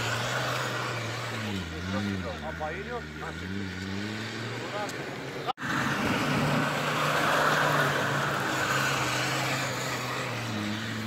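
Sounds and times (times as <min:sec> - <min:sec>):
off-road vehicle engine under load: 0:00.0 - 0:11.0.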